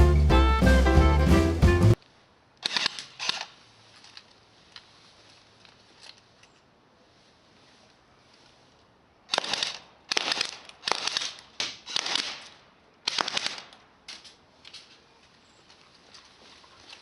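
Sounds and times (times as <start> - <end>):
airsoft gun firing bursts: 9.3 - 13.7.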